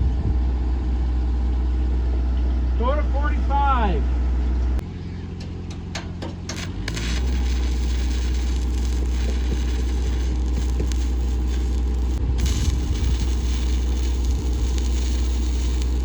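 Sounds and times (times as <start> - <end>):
welding arc crackling: 6.5 - 16.0
welding arc pops: 6.5 - 16.0.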